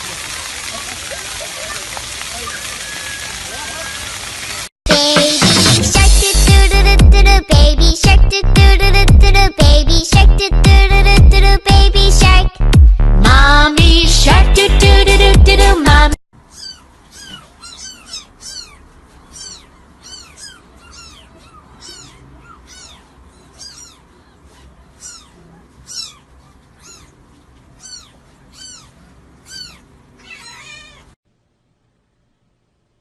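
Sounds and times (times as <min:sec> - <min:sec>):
cat mewing: 0:16.5 - 0:31.2.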